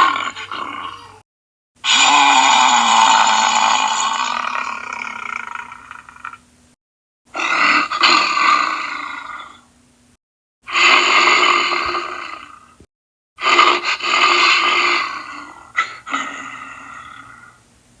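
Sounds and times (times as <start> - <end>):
cartoon bear roar: 0.0 - 1.2, 1.8 - 6.4, 7.3 - 9.6.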